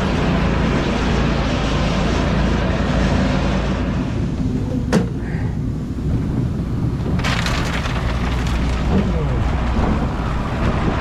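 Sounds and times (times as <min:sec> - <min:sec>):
wind noise: 0:03.7 - 0:11.0
tractor engine running: 0:06.2 - 0:11.0.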